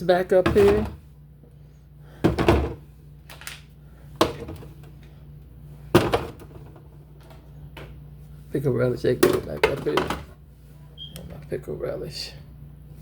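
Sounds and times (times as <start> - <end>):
bottles set down on shelves: 2.2 - 2.8, 5.9 - 6.8.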